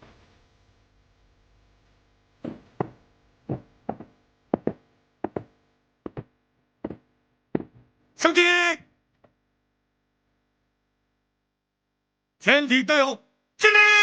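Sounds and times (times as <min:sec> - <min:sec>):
boots marching on hard ground: 0:02.4 - 0:07.9.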